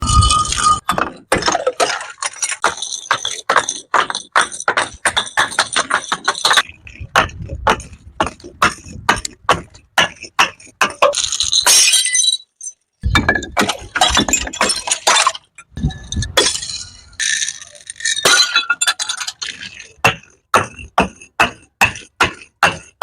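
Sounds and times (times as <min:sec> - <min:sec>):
sharp knocks and crunches: 0:00.1 - 0:11.7.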